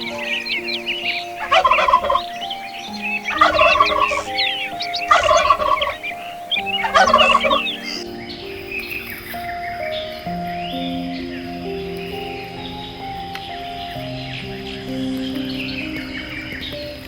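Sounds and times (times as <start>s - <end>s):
small birds chirping: 0.0s - 17.0s
soft piano music: 0.0s - 17.0s
animal rattling call: 1.4s - 2.3s, 3.3s - 8.0s.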